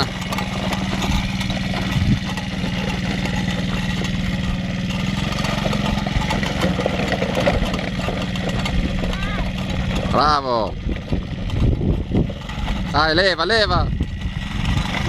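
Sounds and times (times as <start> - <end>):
engine knock: 0.0 - 15.0
small engine running steadily: 0.0 - 15.0.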